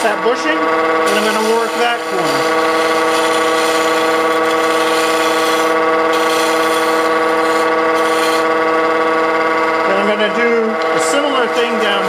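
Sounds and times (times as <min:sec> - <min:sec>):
wood lathe humming: 0:00.0 - 0:12.0
gouge cutting wood hiss: 0:01.0 - 0:08.5.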